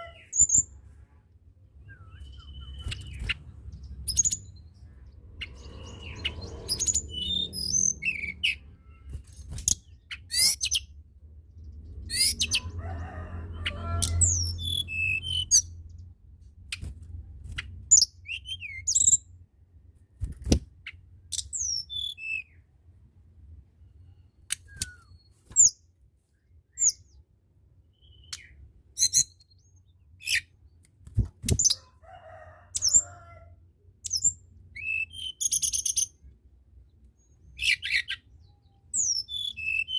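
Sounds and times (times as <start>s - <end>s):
bird chirping and whistling: 1.8s - 3.4s, 5.7s - 8.6s, 14.1s - 15.7s, 17.9s - 19.2s, 21.4s - 22.6s, 34.1s - 36.1s, 39.0s - 39.9s.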